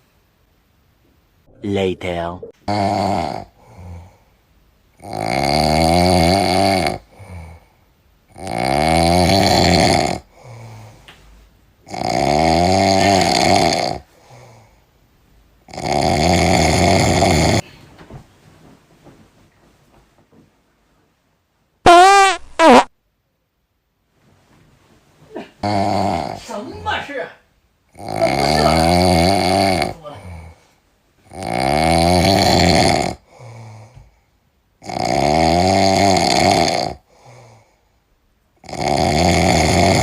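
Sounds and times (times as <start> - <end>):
person snoring loudly: 2.6 - 4.1, 5.0 - 7.6, 8.3 - 10.6, 11.9 - 14.1, 15.7 - 17.6, 25.6 - 26.4, 27.9 - 30.5, 31.3 - 33.2, 34.8 - 37.0, 38.6 - 40.0.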